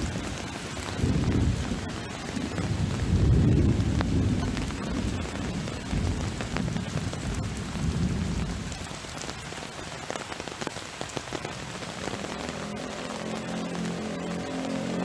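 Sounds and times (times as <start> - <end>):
heavy rain pouring: 0.0 - 15.0
raindrop hits: 0.0 - 15.0
low rumble of thunder: 0.9 - 9.0.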